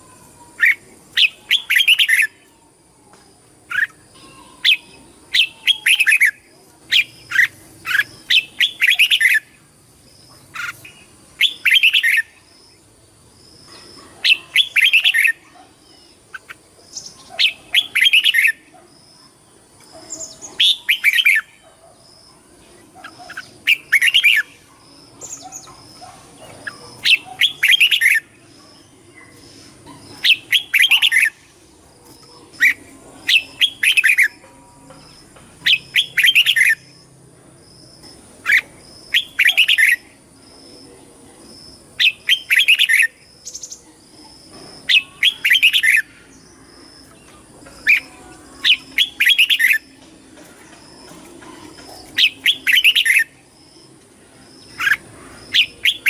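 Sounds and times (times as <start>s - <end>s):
bird warbling song: 0.0s - 2.5s, 3.7s - 9.6s, 10.3s - 12.4s, 13.8s - 18.8s, 19.8s - 36.9s, 38.4s - 40.1s, 44.8s - 53.9s, 54.5s - 56.0s.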